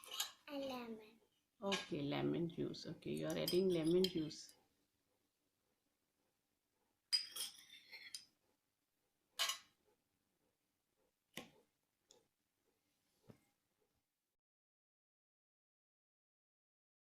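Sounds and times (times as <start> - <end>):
utensil clinking against dish: 3.2 - 4.3.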